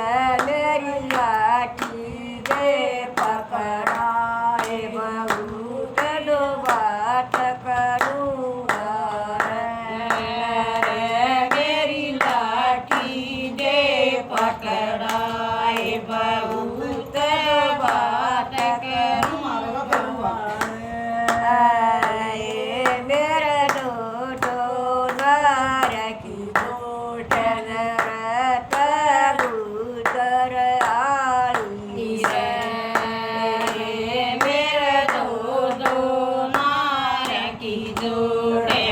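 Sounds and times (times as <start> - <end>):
steady hand-clapping: 0.0 - 38.9
woman singing devotional song: 0.0 - 38.9.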